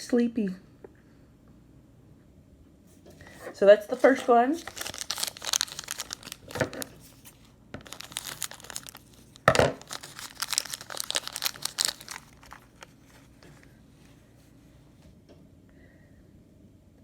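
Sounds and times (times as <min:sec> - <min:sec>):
packaging crinkling and tearing: 0:03.5 - 0:13.6.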